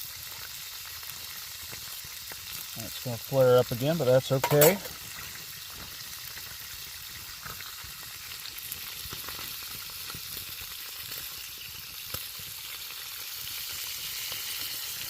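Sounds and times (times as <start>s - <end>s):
bacon sizzling: 0.0s - 15.0s.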